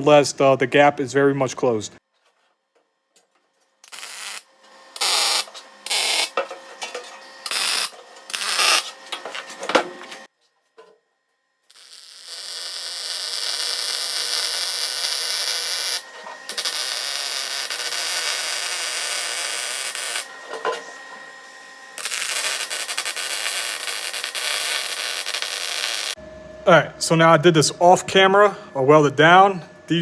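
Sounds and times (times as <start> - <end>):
welding arc crackling hiss: 3.8 - 6.7, 7.3 - 10.3, 11.7 - 20.4, 22.0 - 26.2.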